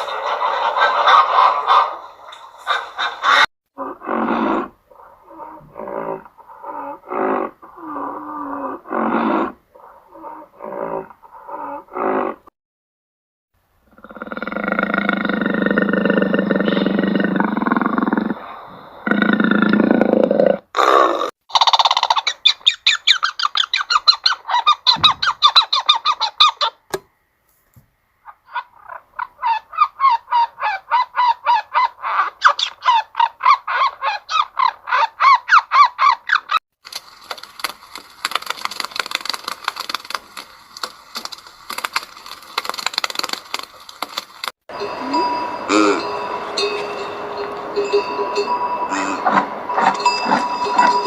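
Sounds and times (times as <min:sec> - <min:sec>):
birds calling in rapid notes: 0:21.5 - 0:26.8.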